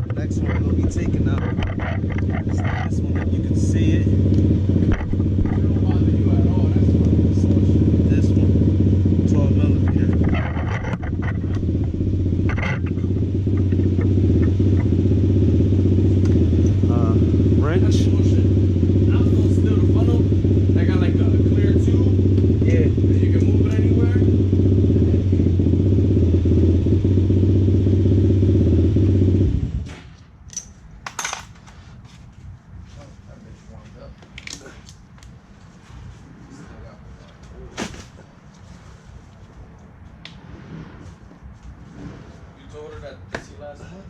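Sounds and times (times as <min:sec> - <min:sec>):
steady engine drone: 0:00.0 - 0:31.4
hand tools clicking and clinking: 0:30.5 - 0:31.8.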